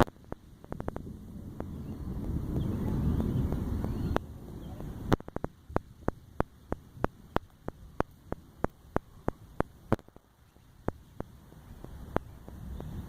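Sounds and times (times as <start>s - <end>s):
faint hiss: 0.0s - 13.0s
sharp ticks: 5.1s - 10.2s.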